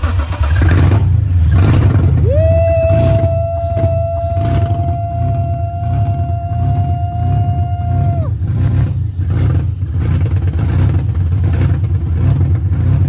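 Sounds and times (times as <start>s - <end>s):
car engine running: 0.0s - 13.0s
high whine: 1.8s - 9.1s.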